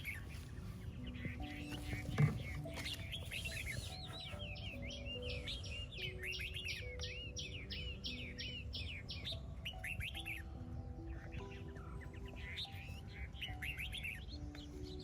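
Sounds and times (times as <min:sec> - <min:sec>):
small birds chirping: 0:00.0 - 0:15.0
soft background music: 0:00.0 - 0:15.0
dull thump: 0:01.8 - 0:03.3.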